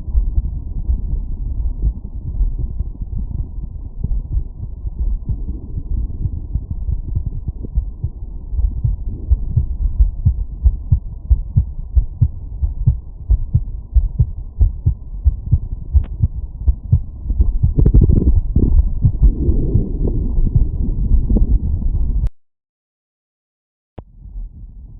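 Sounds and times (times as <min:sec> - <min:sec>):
heartbeat through stethoscope: 0:00.0 - 0:22.3, 0:24.0 - 0:24.9.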